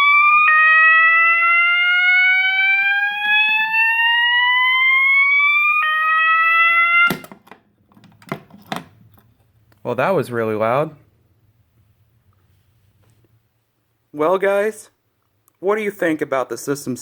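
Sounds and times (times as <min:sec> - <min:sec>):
fire alarm whoop tone: 0:00.0 - 0:07.3
small handling knocks: 0:07.1 - 0:09.4.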